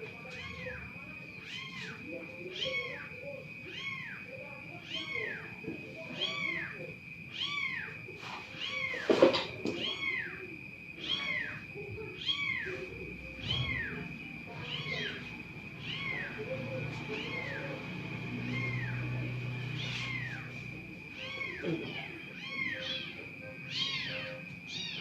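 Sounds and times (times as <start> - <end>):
kitten mewing: 14.6 - 25.0.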